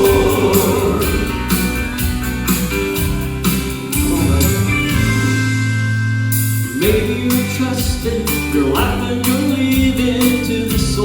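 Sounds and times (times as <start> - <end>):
vocal quartet singing: 0.0 - 1.8
guitar over a steady beat: 0.0 - 11.0.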